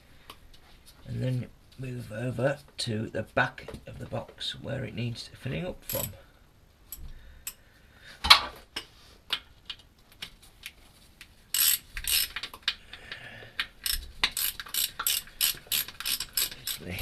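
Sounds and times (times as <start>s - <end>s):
metal tools clinking and knocking: 5.8s - 6.2s
socket ratchet clicking: 5.8s - 6.2s, 11.6s - 12.6s, 13.8s - 17.0s.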